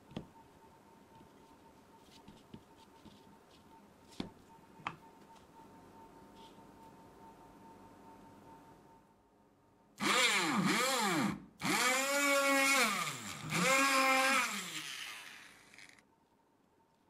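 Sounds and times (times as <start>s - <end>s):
small electric motor whining: 10.0s - 16.0s.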